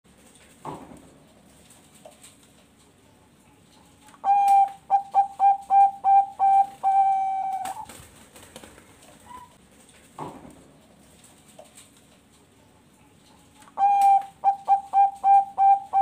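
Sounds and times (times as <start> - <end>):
dove cooing: 4.1 - 8.0, 13.7 - 16.0.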